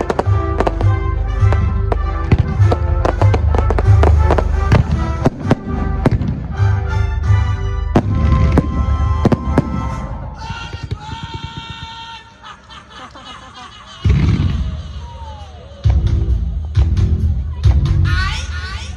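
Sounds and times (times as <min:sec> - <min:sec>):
fireworks bangs and cracks: 0:00.0 - 0:12.0
music with pulsing bass: 0:15.9 - 0:18.4.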